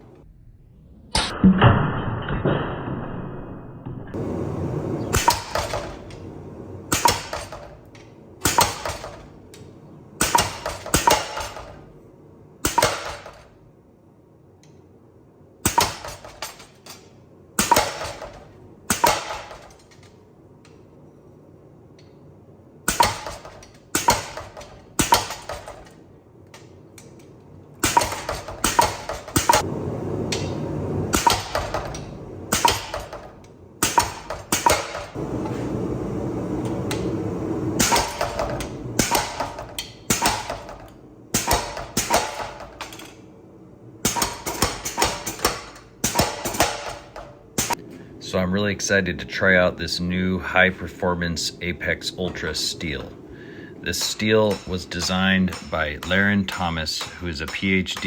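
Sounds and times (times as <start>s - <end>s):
hammer striking steel anvil: 5.1s - 6.2s, 6.9s - 9.3s, 10.2s - 11.8s, 12.6s - 13.5s, 15.6s - 20.0s, 22.9s - 26.0s, 27.8s - 29.7s, 30.3s - 35.2s, 37.8s - 43.1s, 44.1s - 47.8s, 54.0s - 58.0s.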